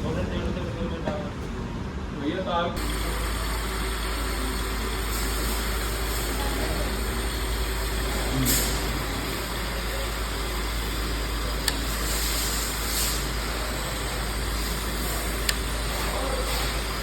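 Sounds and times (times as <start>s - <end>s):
sharp click: 11.6s - 11.8s.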